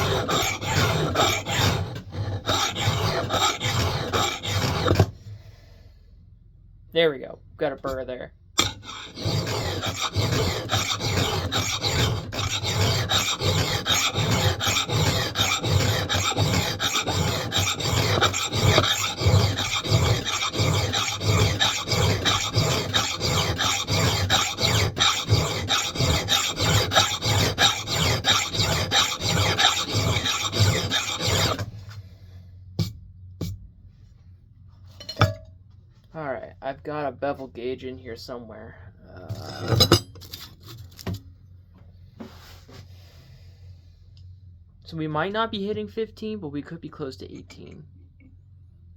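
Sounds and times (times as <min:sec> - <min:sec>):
hand file rasping on steel: 0:00.0 - 0:05.2, 0:08.6 - 0:31.7.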